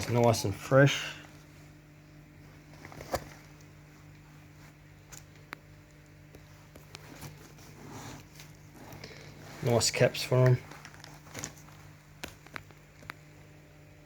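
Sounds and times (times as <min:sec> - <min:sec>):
steady low hum: 0:00.0 - 0:14.0
soft rustle: 0:01.2 - 0:13.0.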